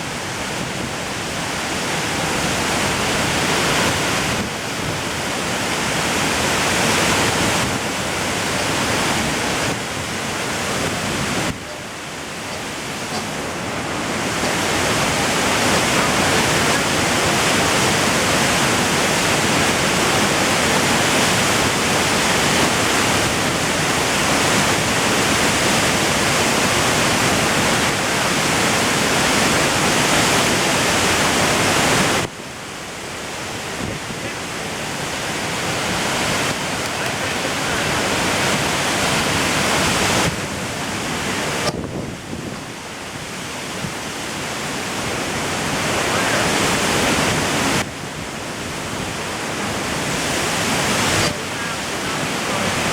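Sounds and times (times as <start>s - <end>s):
waterfall rushing: 0.0s - 52.9s.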